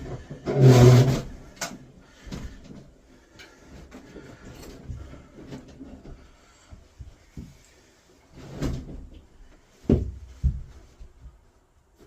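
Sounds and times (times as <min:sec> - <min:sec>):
heavy metal unit scraping: 0:00.0 - 0:01.5
knocks and bumps: 0:09.8 - 0:11.4.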